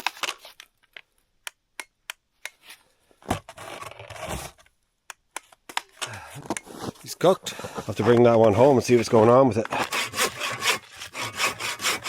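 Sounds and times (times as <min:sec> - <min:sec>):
scraping and rustling: 0:06.4 - 0:12.0.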